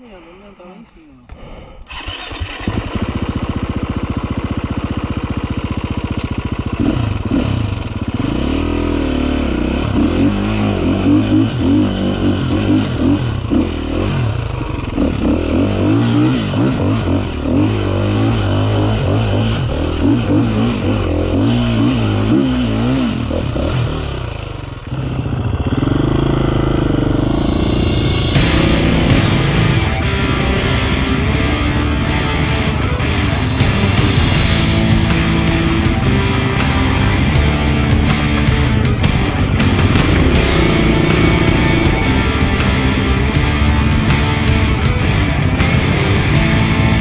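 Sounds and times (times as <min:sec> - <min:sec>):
dirt bike engine revving: 0:01.9 - 0:32.0, 0:33.2 - 0:47.0.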